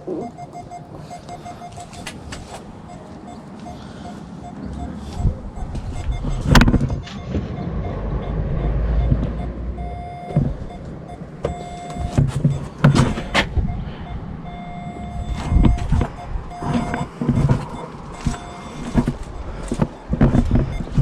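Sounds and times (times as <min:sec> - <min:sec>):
parking sensor beeping: 0:00.0 - 0:21.0
knocks and clatter: 0:05.2 - 0:07.7, 0:10.2 - 0:13.7, 0:15.3 - 0:21.0.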